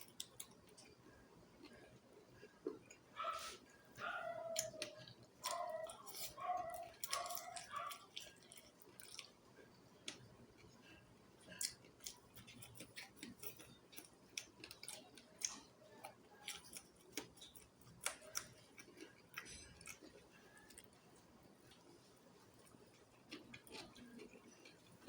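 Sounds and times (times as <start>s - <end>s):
chewing and mouth clicks: 0.0s - 3.1s, 4.3s - 25.0s.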